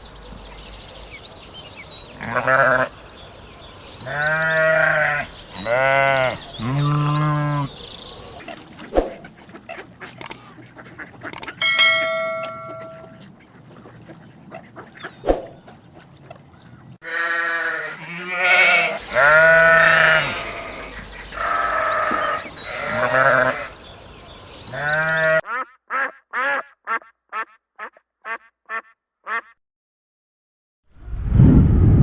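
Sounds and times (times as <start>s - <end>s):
animals bleating: 2.2s - 2.9s, 4.0s - 7.8s, 17.0s - 23.8s, 24.7s - 25.5s.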